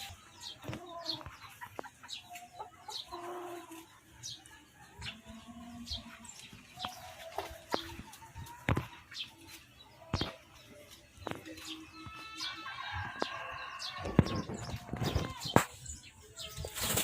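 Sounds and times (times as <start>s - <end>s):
chickens clucking and peeping: 0.0s - 17.0s
drawn-out chicken call: 11.5s - 15.8s.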